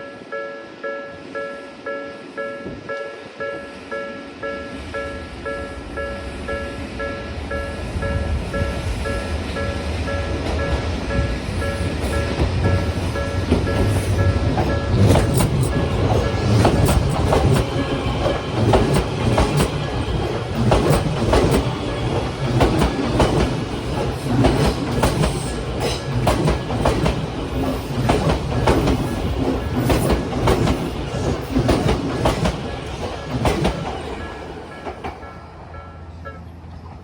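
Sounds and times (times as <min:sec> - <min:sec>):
electric train passing: 0:00.0 - 0:37.0
train wheels clattering over rail joints: 0:09.6 - 0:35.2.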